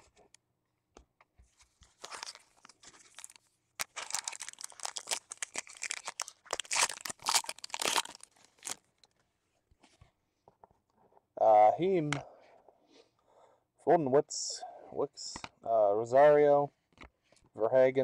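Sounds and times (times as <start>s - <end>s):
rustling: 1.4s - 8.8s
foil wrapper tearing and crinkling: 1.8s - 9.1s.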